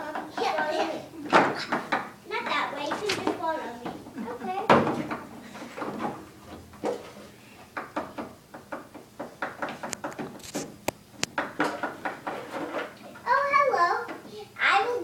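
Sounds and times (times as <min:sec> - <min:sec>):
props tapping and knocking: 0:01.3 - 0:14.3.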